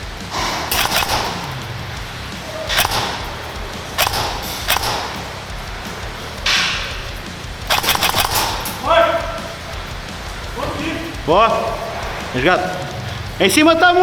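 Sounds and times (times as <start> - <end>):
airsoft guns firing: 0.3 - 10.2.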